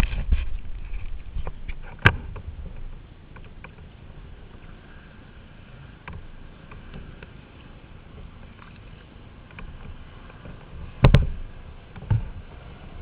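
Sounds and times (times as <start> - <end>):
rumble of wind and water: 0.0 - 13.0
paddle splashes and knocks: 5.8 - 13.0.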